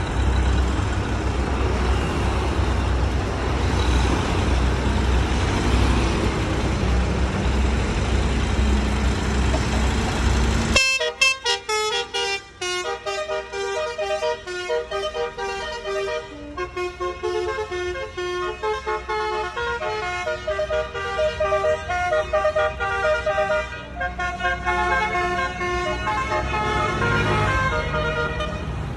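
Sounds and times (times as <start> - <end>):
heavy vehicle engine rumble: 0.0 - 28.9
bus musical horn tune: 10.7 - 28.9.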